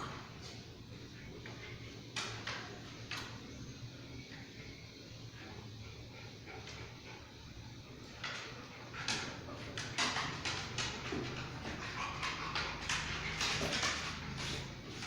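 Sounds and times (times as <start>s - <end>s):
dogs scuffling and scratching: 8.1s - 15.0s.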